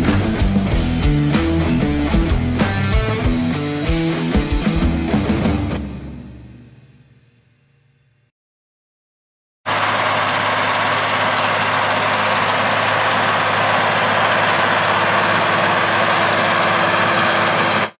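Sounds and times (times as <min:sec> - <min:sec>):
tractor engine running: 0:09.7 - 0:18.0.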